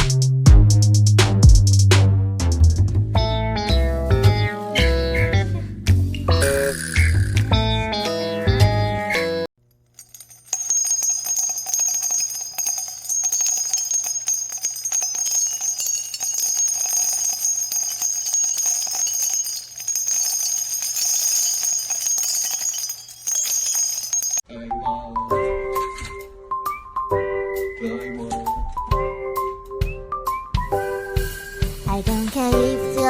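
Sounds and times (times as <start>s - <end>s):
small bells jingling: 9.7s - 24.4s.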